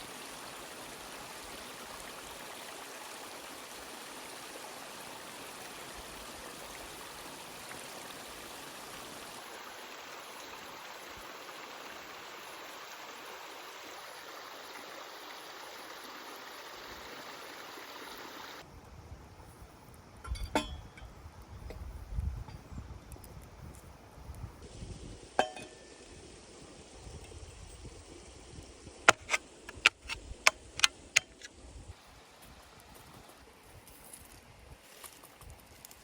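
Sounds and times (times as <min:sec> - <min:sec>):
flowing stream rushing: 0:00.0 - 0:18.6, 0:25.4 - 0:26.2
sharp clink: 0:20.2 - 0:21.1.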